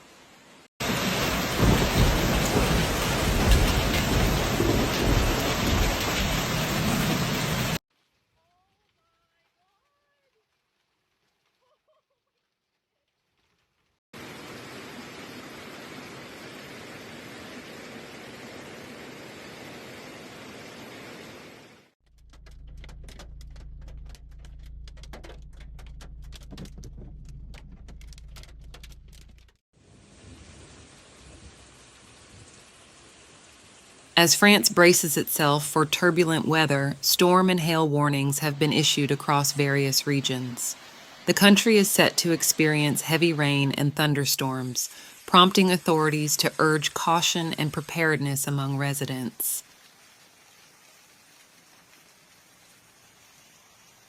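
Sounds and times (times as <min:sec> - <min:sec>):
heavy rain pouring: 0:00.6 - 0:08.2, 0:22.3 - 0:54.0
hail knocking on a vehicle: 0:01.2 - 0:06.9
heavy low rumble: 0:22.1 - 0:29.6.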